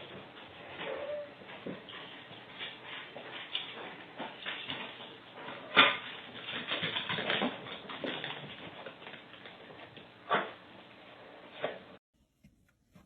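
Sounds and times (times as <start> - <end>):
pet animal sounds: 0.6 - 2.1, 5.4 - 6.2.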